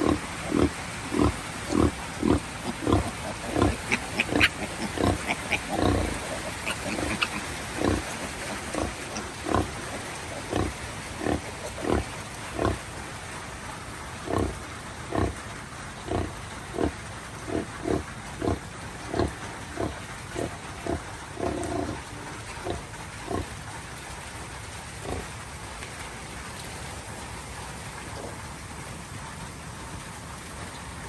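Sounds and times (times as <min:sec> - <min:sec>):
sow grunting: 0:00.0 - 0:12.8
heavy rain hiss: 0:00.0 - 0:31.0.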